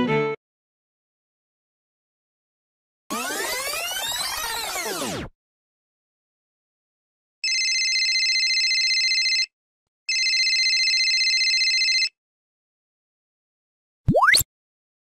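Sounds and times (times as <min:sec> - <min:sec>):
telephone ringing: 0:07.4 - 0:09.5, 0:10.1 - 0:12.2.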